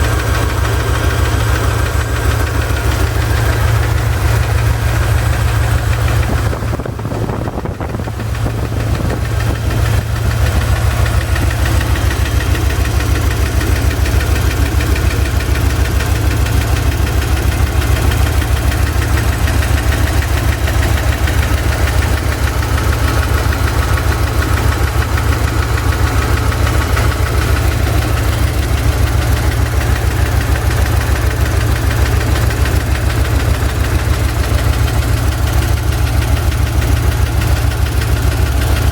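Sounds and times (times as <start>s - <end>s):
car engine running: 0.0s - 38.9s
engine knocking: 0.0s - 38.9s.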